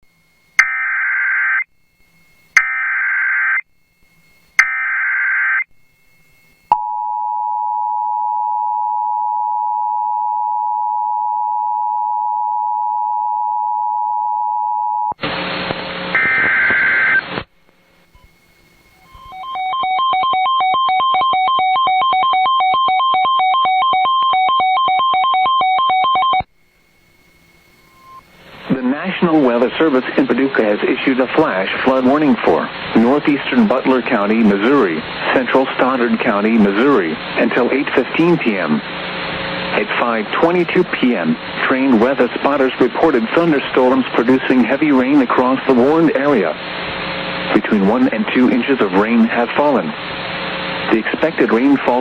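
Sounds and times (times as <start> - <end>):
burst of static: 15.2 - 19.4, 26.6 - 52.0
pulsing electronic alarm beep: 19.0 - 26.4.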